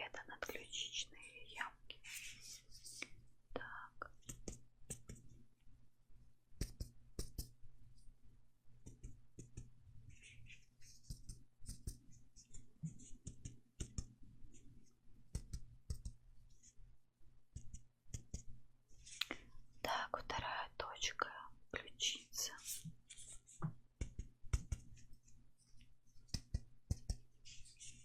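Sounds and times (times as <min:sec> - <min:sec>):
soft finger taps: 0:06.6 - 0:07.6, 0:10.9 - 0:14.2, 0:15.3 - 0:16.2, 0:23.6 - 0:25.0, 0:26.2 - 0:27.3.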